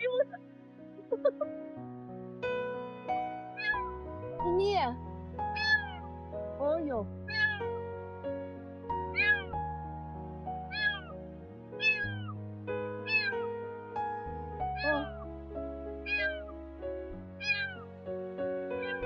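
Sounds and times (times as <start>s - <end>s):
background music: 0.0s - 19.0s
kitten meowing: 3.6s - 3.9s, 5.5s - 6.1s, 7.3s - 7.7s, 9.1s - 9.6s, 10.7s - 11.1s, 11.8s - 12.4s, 13.0s - 13.5s, 14.8s - 15.2s, 16.0s - 16.5s, 17.4s - 17.8s, 18.8s - 19.0s.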